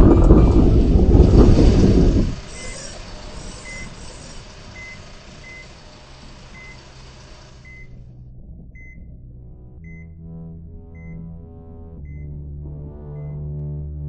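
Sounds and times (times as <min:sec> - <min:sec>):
faint low hum: 0:00.0 - 0:14.0
loud low rumble: 0:00.0 - 0:14.0
short high electronic beeps: 0:07.6 - 0:08.0.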